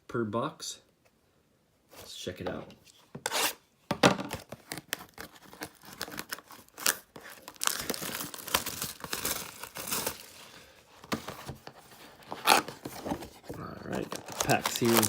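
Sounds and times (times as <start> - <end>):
packaging tearing and crinkling: 4.4 - 10.7, 12.2 - 13.2, 13.9 - 15.0.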